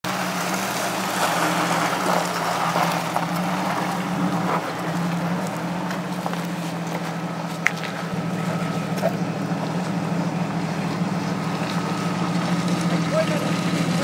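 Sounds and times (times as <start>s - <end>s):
engine running hum: 0.0s - 14.0s.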